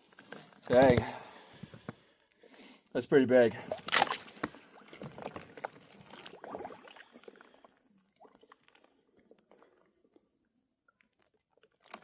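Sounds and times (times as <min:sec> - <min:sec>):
water sloshing: 0:03.6 - 0:09.8.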